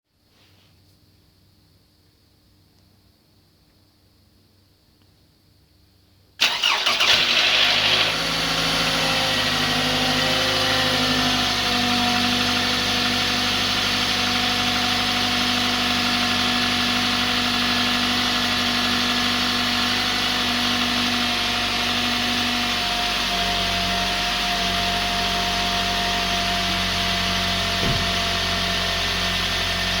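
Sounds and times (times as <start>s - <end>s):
car engine fast idle: 6.4s - 23.8s, 24.6s - 30.0s
car engine starting: 6.4s - 30.0s.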